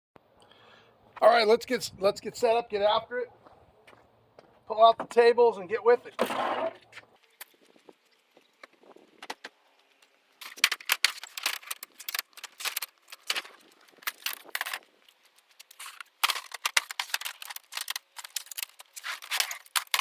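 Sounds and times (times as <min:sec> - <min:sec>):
metal gear jangling and rattling: 0:10.4 - 0:14.9.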